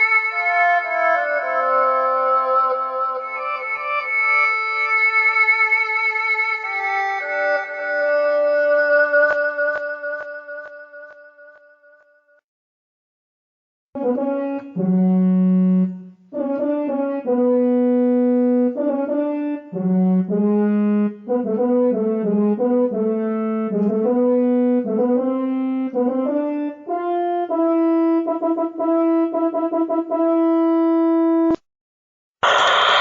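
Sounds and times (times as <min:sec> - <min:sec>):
keyboard brass melody: 0:00.0 - 0:11.6, 0:14.0 - 0:31.6.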